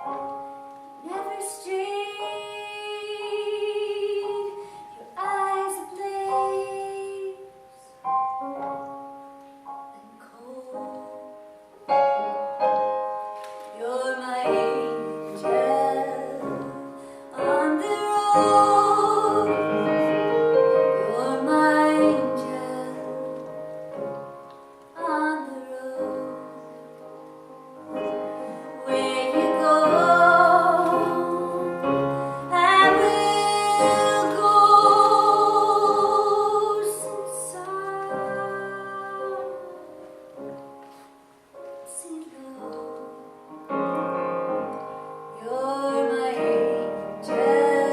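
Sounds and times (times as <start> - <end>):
piano accompaniment: 0.0 - 47.9
woman singing with vibrato: 1.0 - 7.6, 13.8 - 23.4, 25.0 - 26.6, 28.8 - 40.0, 45.4 - 47.9.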